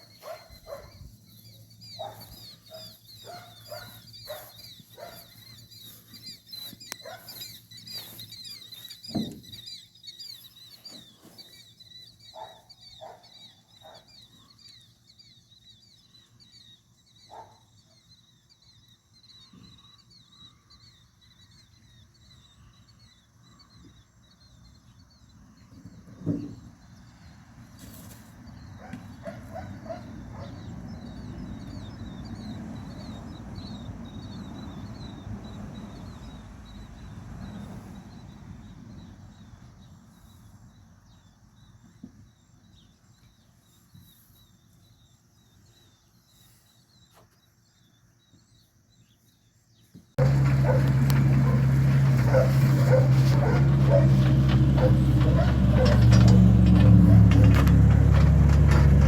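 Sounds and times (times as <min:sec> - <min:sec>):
loud engine running: 0:50.2 - 0:59.0.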